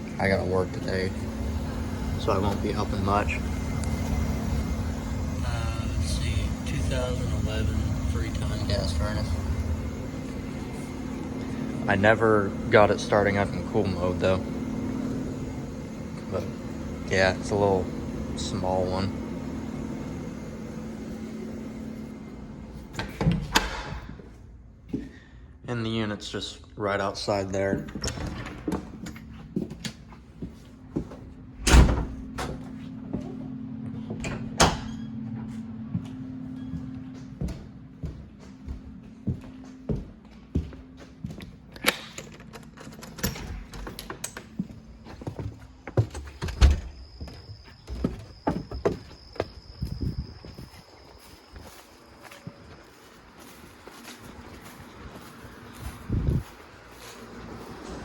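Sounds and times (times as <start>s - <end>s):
furnace blower humming: 0.0s - 58.0s
footsteps and handling knocks: 27.6s - 31.4s, 32.2s - 34.5s, 35.4s - 57.7s.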